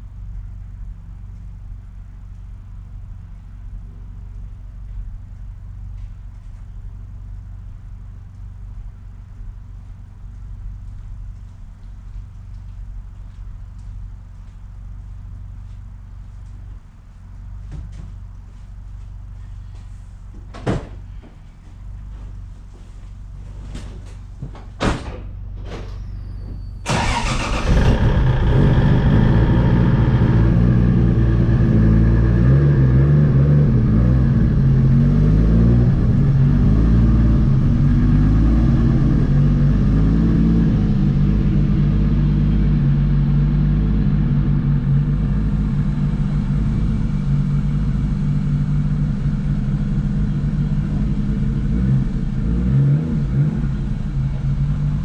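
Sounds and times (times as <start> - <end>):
truck engine starting and idling: 25.5 - 55.0.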